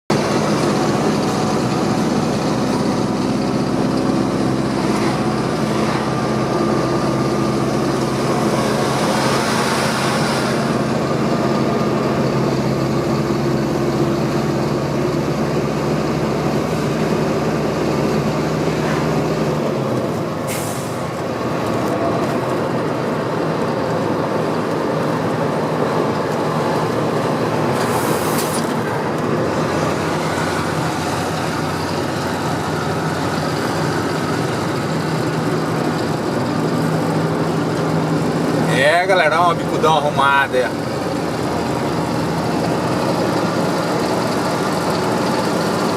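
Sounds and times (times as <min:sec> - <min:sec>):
truck diesel engine pulling: 0:00.1 - 0:45.9
short air hisses: 0:20.5 - 0:21.0.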